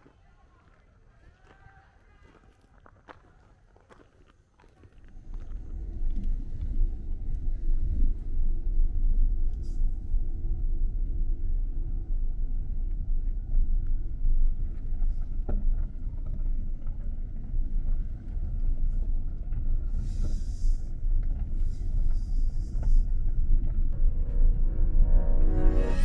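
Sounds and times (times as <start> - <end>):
wood fire rumbling and crackling: 4.9 - 24.8.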